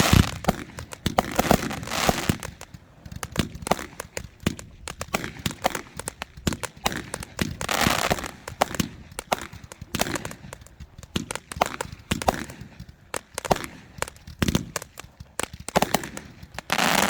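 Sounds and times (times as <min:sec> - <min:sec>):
fireworks hissing and crackling: 0:00.0 - 0:17.0
fireworks popping and cracking: 0:00.0 - 0:17.0.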